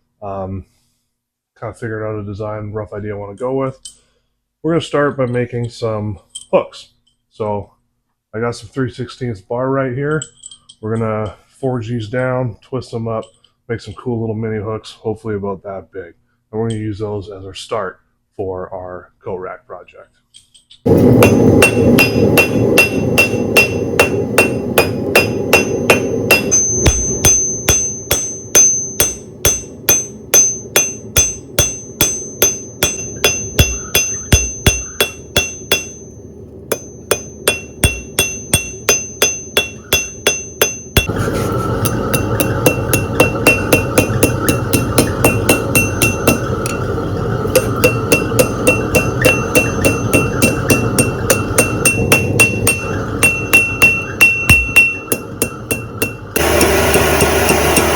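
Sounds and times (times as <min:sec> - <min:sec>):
hammer striking steel on anvil: 0:20.9 - 0:57.9
steady rushing noise: 0:20.9 - 0:57.9.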